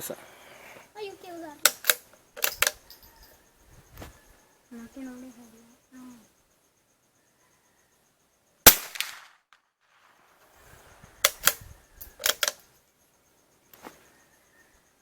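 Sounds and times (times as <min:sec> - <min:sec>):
sharp rifle bolt clicks: 0:01.6 - 0:03.2, 0:08.7 - 0:09.3, 0:11.2 - 0:12.7
rifle shot with ringing tail: 0:08.7 - 0:09.4.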